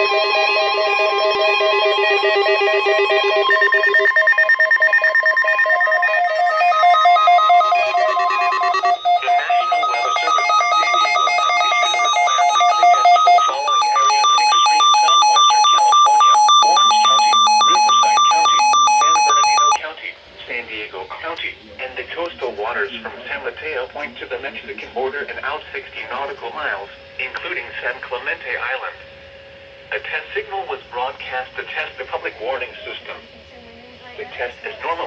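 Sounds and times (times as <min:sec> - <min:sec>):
electronic synthesizer music: 0:00.0 - 0:19.8
fast rhythmic synth pattern: 0:00.0 - 0:19.8.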